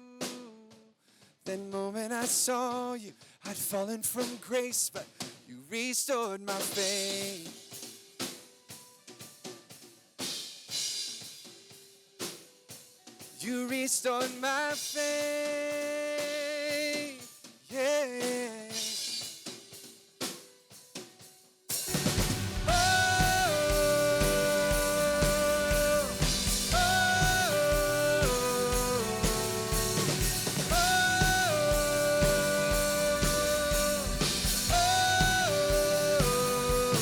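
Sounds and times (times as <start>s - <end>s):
live band playing: 21.8s - 37.0s.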